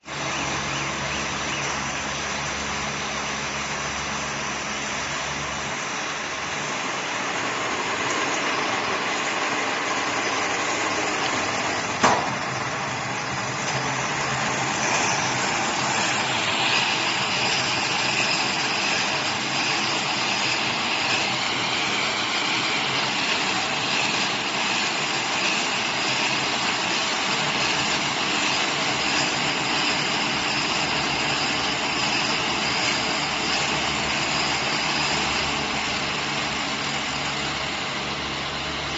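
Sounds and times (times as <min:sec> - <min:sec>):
baling machine running: 0:00.0 - 0:38.9
sharp knock: 0:12.0 - 0:12.4.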